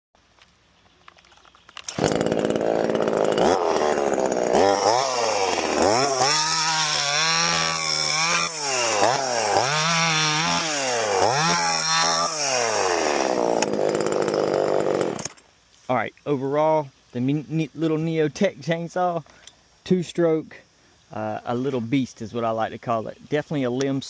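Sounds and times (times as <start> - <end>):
chainsaw engine revving: 1.8 - 15.4.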